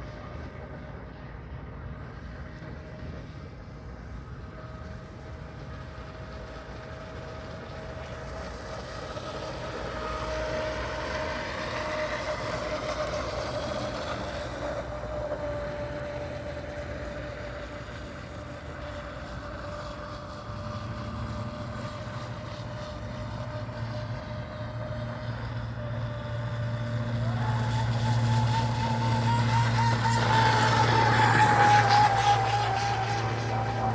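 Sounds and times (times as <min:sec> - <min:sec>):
hull wash on water: 0:00.0 - 0:33.9
low hum: 0:00.0 - 0:33.9
model boat motor whining: 0:00.0 - 0:33.9.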